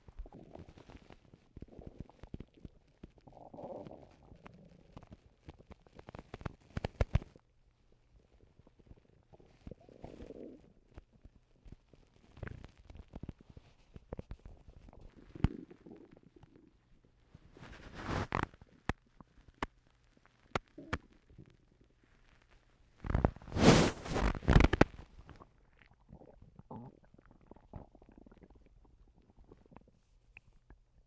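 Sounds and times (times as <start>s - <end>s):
stomach gurgling: 0.0s - 31.0s.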